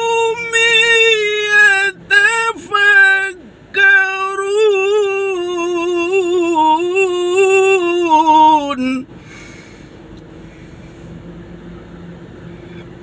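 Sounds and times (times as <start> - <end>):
person reciting melodically: 0.0 - 9.1.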